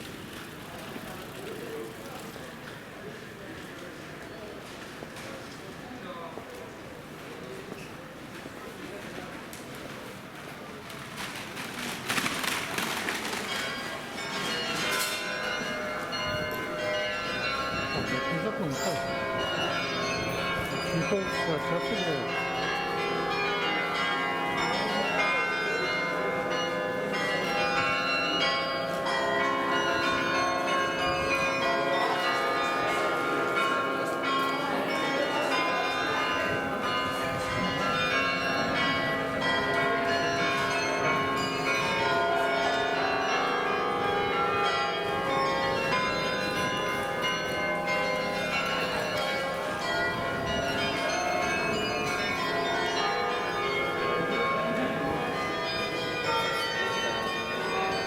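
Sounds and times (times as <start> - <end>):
church bells ringing: 12.4 - 58.0.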